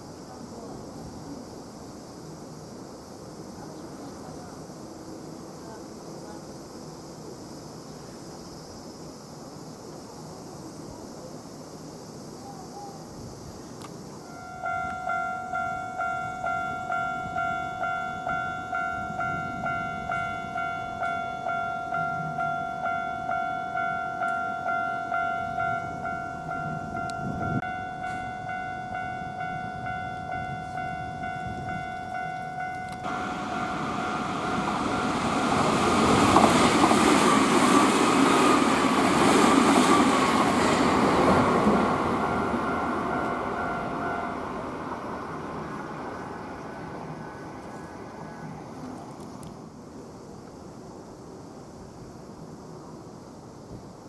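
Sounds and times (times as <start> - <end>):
electric train passing: 0.0 - 54.0
level crossing warning bell: 14.3 - 36.2, 41.9 - 44.7.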